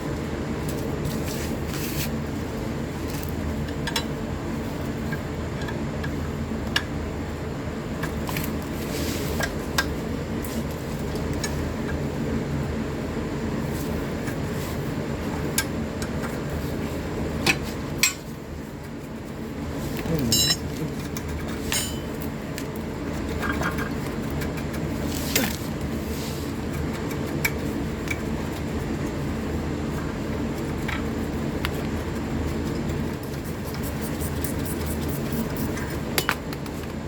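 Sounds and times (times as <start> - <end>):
low background hum: 0.0 - 37.0
hand tools clinking on metal: 20.2 - 20.9, 21.7 - 22.1.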